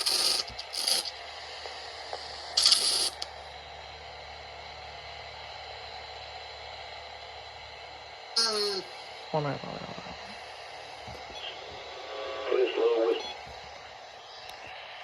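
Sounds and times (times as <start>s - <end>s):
burst of high hissing noise: 0.0s - 1.1s, 2.6s - 3.2s
faint radio hiss and hum: 0.0s - 15.0s.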